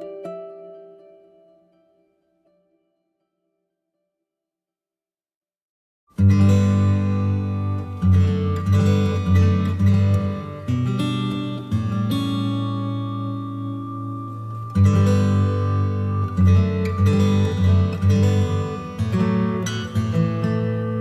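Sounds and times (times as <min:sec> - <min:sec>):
soft acoustic guitar chords: 0:06.2 - 0:21.0.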